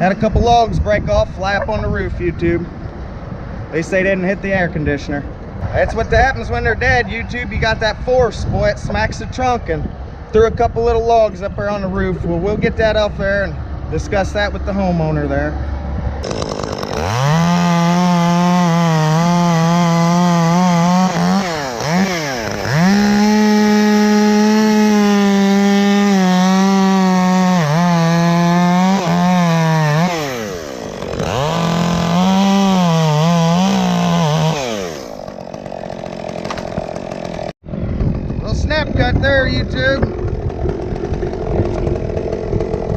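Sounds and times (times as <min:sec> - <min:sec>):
chainsaw cutting wood: 0:15.6 - 0:39.2, 0:39.8 - 0:42.9.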